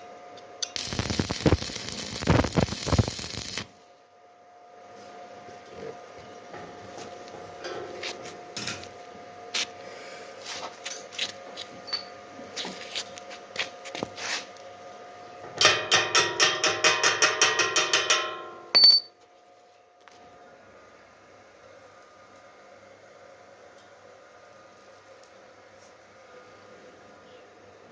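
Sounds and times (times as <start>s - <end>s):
hammer striking steel: 15.6s - 19.1s.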